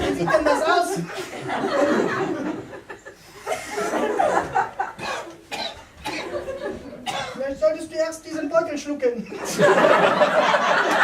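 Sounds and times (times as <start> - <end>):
audience chuckling: 0.0 - 5.1, 6.1 - 7.0, 9.4 - 11.0
man coughing and spluttering: 5.0 - 6.4, 7.0 - 7.5.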